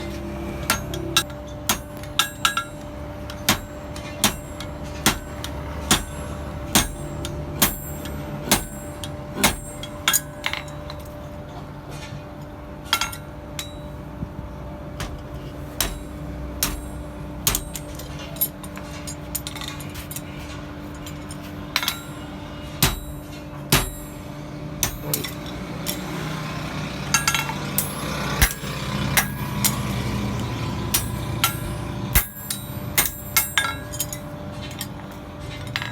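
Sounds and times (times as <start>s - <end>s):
steady low hum: 0.0s - 35.9s
hammer ringing on anvil: 0.7s - 10.8s, 15.8s - 18.0s, 21.8s - 24.2s, 27.1s - 30.0s, 30.9s - 34.3s.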